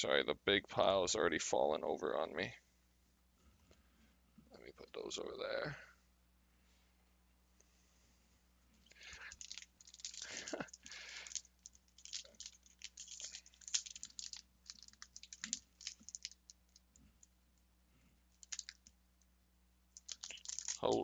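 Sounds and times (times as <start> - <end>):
foil wrapper crinkling: 8.9 - 17.0, 18.4 - 18.9, 20.0 - 21.0.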